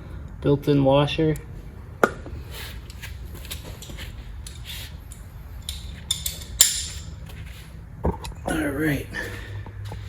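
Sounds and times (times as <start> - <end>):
metal tools clicking and clinking: 2.9 - 7.2.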